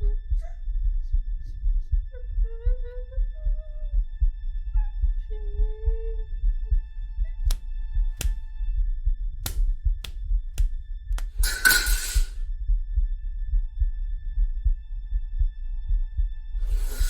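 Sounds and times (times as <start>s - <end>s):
low throbbing heartbeat pulse: 0.0s - 7.6s, 12.5s - 16.7s
sharp clicks: 9.4s - 12.4s.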